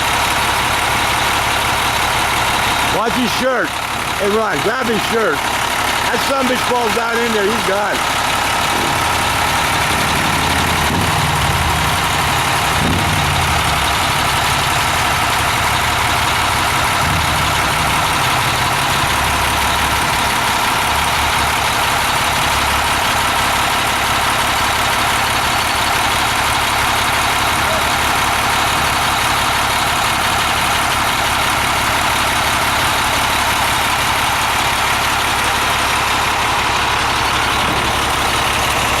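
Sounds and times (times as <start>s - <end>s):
diesel engine idling: 0.0s - 39.0s.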